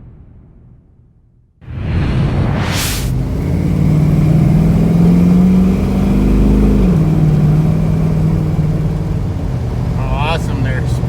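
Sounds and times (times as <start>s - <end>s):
truck engine pulling under load: 3.1s - 11.0s.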